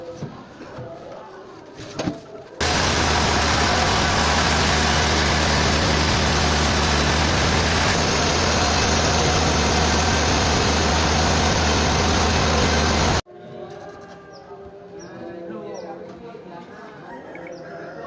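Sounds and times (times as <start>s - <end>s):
engine running steadily: 2.6s - 13.2s.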